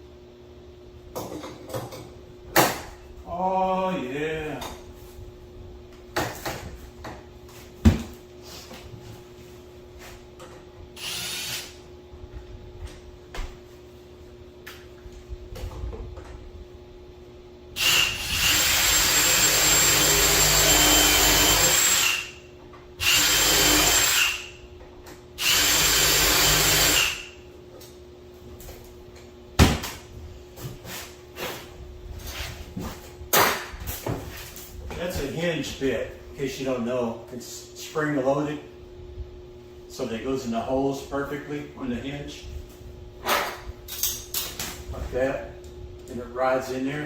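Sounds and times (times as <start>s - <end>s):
power drill whining: 11.0s - 11.8s, 17.8s - 22.4s, 23.0s - 24.5s, 25.4s - 27.3s.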